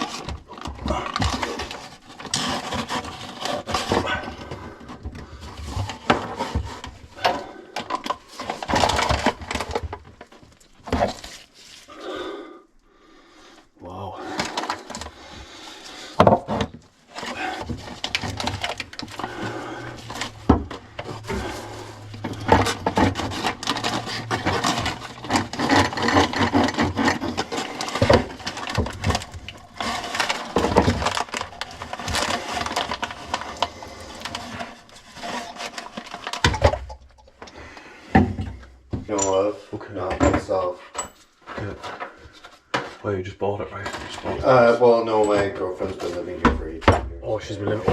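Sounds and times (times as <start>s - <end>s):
tools knocking and scraping pipes: 0.0s - 11.6s, 14.2s - 43.1s, 43.7s - 47.9s
low motor hum: 18.9s - 26.4s.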